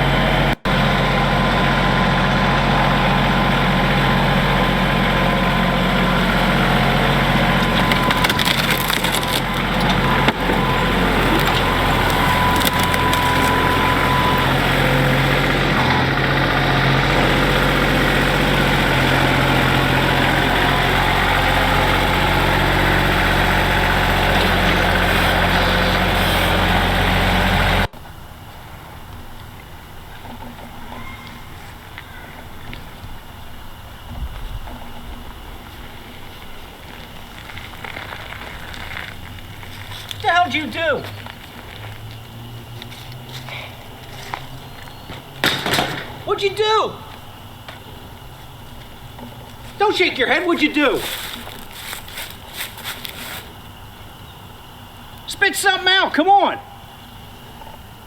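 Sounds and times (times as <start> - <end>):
woodchipper engine running: 0.0 - 58.0
brush cracking and splintering: 7.3 - 14.7, 50.5 - 53.6.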